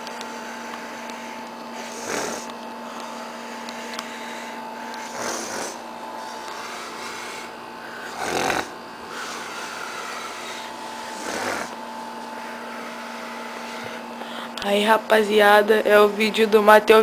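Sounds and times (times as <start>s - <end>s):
man snoring: 1.7s - 3.5s, 4.2s - 11.8s.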